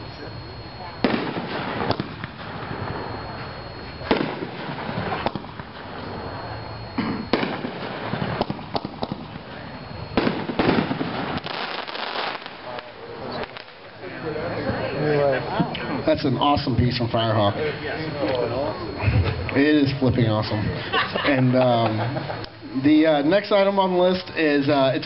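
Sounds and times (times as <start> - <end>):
firework crackling: 0.0 - 21.1
firework bangs: 1.0 - 13.9.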